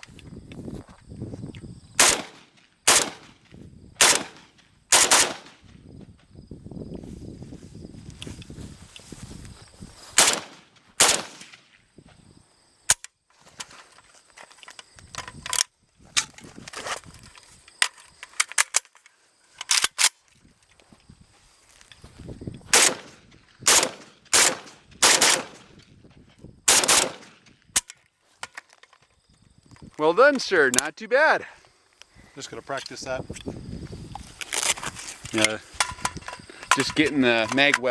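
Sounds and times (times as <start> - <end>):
gunshots: 2.0 - 3.4, 4.0 - 5.6, 10.2 - 11.6, 22.7 - 25.7, 26.7 - 27.4.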